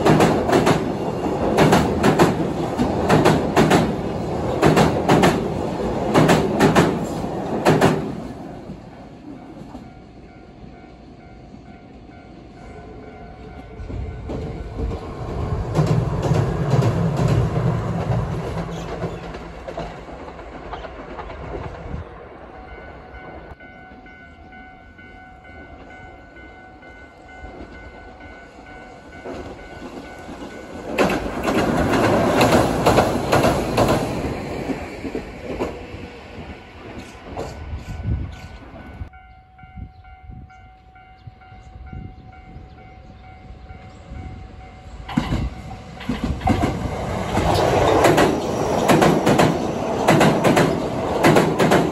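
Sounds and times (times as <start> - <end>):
train wheels clacking over rail joints: 0.0 - 8.3, 29.2 - 35.8, 45.0 - 51.9
train rumble: 0.0 - 51.9.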